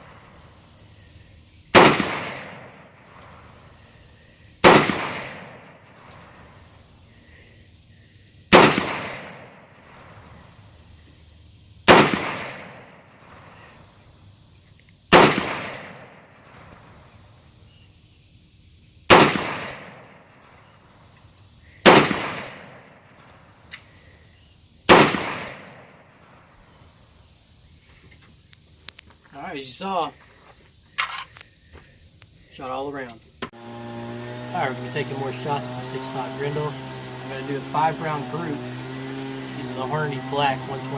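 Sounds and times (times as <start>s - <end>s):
rifle shots with echo: 1.7s - 3.0s, 4.6s - 5.8s, 8.5s - 9.6s, 11.9s - 13.0s, 15.1s - 16.2s, 19.1s - 20.3s, 21.8s - 23.0s, 24.9s - 26.1s.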